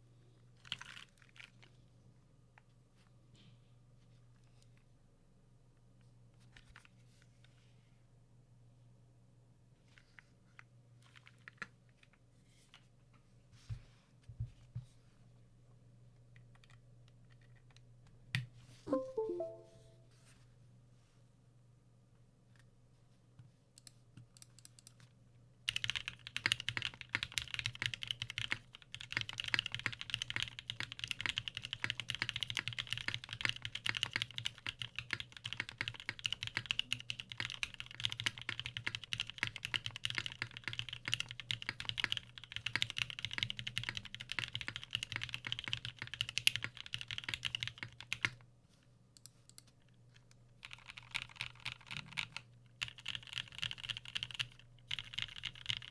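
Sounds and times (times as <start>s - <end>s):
mechanical keyboard typing: 25.7s - 48.4s, 50.6s - 55.9s.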